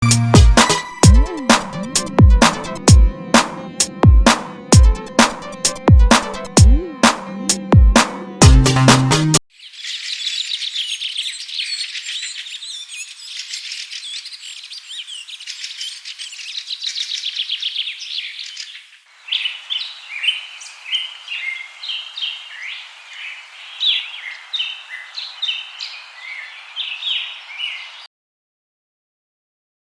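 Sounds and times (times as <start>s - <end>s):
birds chirping and trilling: 9.5s - 28.1s.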